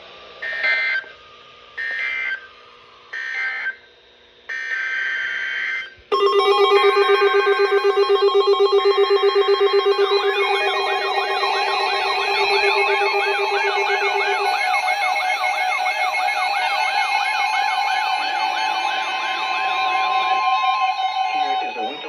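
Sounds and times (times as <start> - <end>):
screeching two-tone data bursts: 4.6 - 22.0
warbling siren-like tones: 5.6 - 22.0
weather radio alarms beeping: 6.1 - 22.0.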